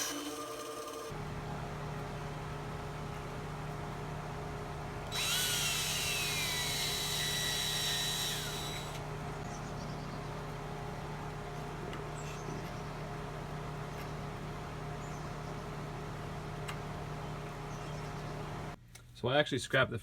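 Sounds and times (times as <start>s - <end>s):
steady low hum: 0.8s - 18.8s
power drill whine: 5.0s - 9.1s.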